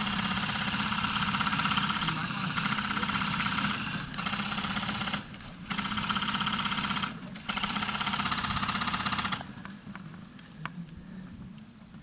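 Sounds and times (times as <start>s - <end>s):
airsoft gun firing bursts: 0.0s - 9.5s.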